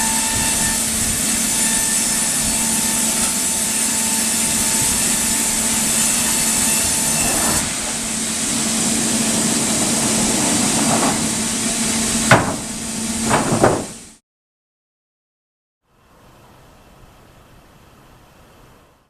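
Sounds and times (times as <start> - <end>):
sawmill saw whirring: 0.0 - 14.2
sharp knocks: 12.2 - 14.0.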